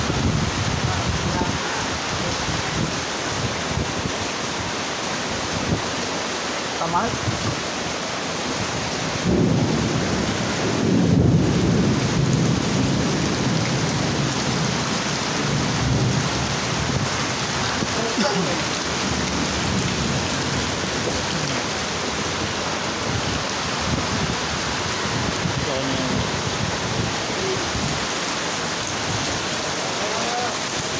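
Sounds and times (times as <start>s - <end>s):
heavy rain pouring: 0.0s - 30.9s
thunder rumble: 8.6s - 28.0s.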